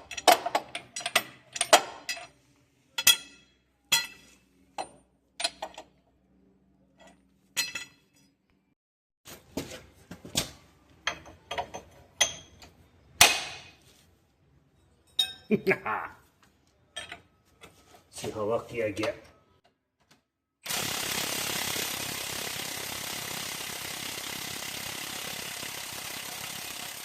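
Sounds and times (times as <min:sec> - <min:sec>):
hand tools clinking on steel: 0:14.8 - 0:15.5, 0:16.9 - 0:17.7.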